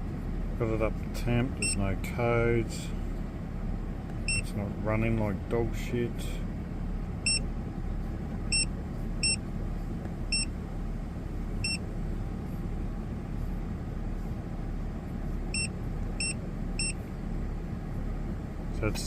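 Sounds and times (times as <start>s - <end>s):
car engine idling: 0.0s - 19.0s.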